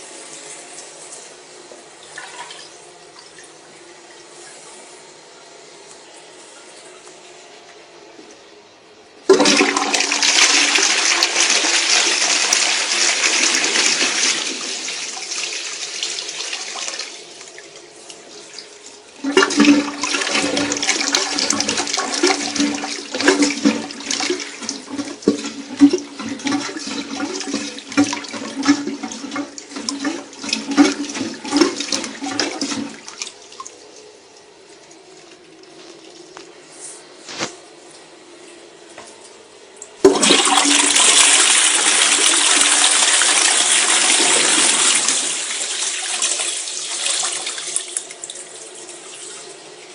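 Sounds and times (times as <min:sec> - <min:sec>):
toilet flushing: 0:00.0 - 0:04.9, 0:09.2 - 0:36.7, 0:39.9 - 0:49.9
cistern refilling with gurgles: 0:09.3 - 0:36.4, 0:40.0 - 0:49.9.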